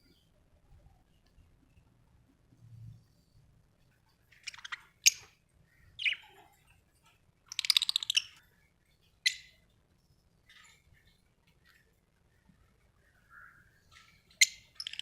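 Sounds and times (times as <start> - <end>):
budgerigar chirping: 4.4 - 5.3, 6.0 - 6.3, 7.5 - 8.4, 9.2 - 9.6, 14.3 - 15.0.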